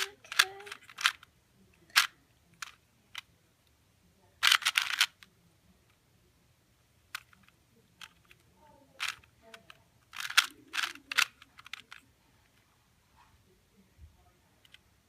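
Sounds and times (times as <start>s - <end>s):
puzzle cube plastic clicks: 0.0s - 3.3s, 4.4s - 5.3s, 7.1s - 12.0s.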